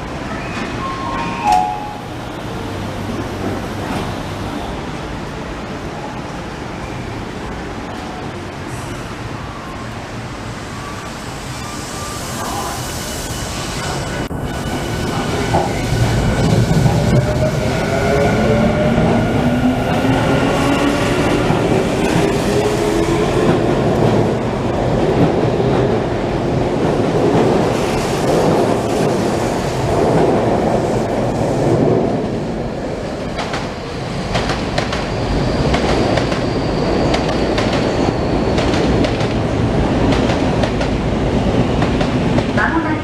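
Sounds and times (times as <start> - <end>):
train wheels rumbling: 11.2 - 43.0.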